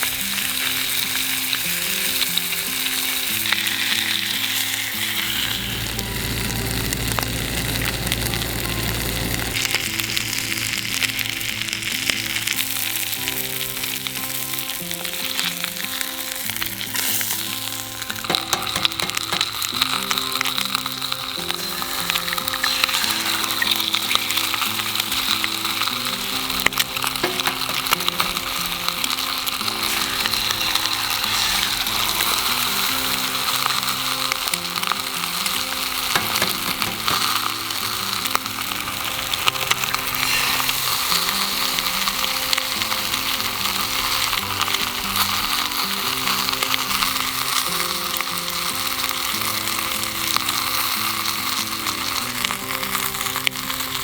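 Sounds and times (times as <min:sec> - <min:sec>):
bacon sizzling in a pan: 0:00.0 - 0:54.0
light background music: 0:00.0 - 0:54.0.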